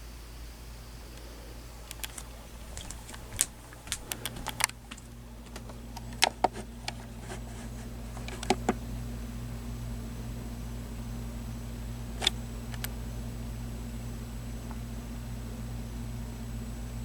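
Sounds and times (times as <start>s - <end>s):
low electrical hum: 0.0s - 17.0s
computer keyboard clicking: 1.9s - 7.4s, 12.2s - 12.9s.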